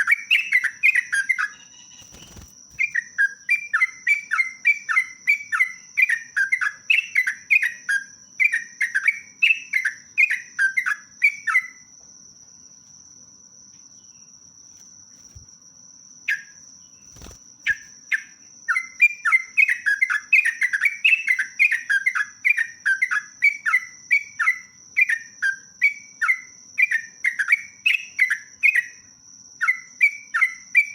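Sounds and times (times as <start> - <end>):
bird singing falling chirps: 0.0 - 11.9, 16.3 - 29.0.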